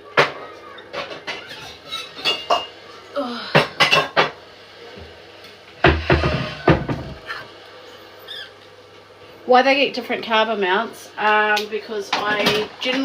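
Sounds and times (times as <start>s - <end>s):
dishes and cutlery clattering: 0.2s - 2.8s.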